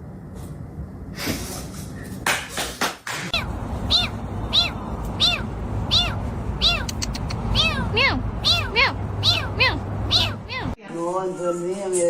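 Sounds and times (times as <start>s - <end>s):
cat mewing: 3.3s - 10.8s.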